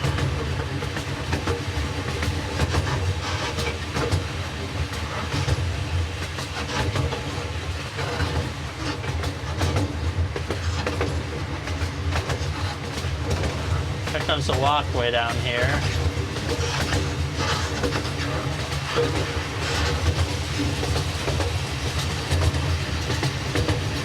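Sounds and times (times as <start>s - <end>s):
miniature train rumbling: 0.0s - 24.0s
wheels clicking over rail joints: 15.8s - 24.0s.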